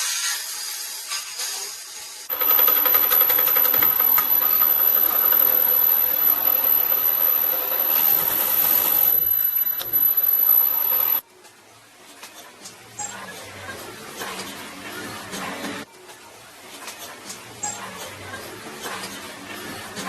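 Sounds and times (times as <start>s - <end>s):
small machine hissing: 2.0s - 11.2s.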